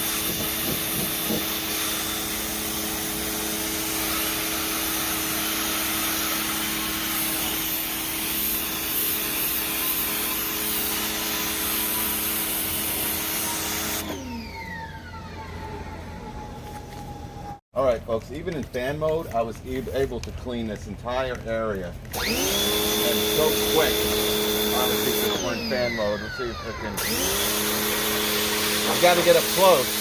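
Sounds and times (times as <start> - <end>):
pressure washer motor hum: 0.0 - 15.8, 22.0 - 30.0.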